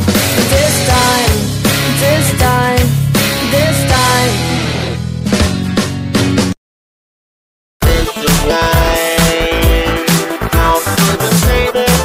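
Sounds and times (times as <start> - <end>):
steady bass beat: 0.0 - 4.7, 7.8 - 12.0
electronic ringtone music: 7.8 - 12.0.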